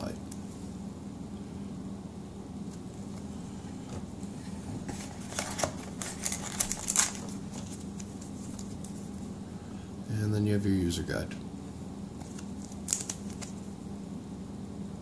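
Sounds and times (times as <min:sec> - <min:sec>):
paper and packaging rustling: 0:04.5 - 0:09.1, 0:12.2 - 0:13.6.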